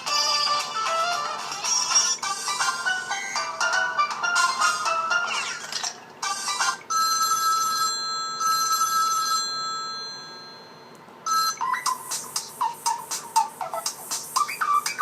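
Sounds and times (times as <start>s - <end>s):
ringtone of short melodic notes: 6.2s - 13.0s.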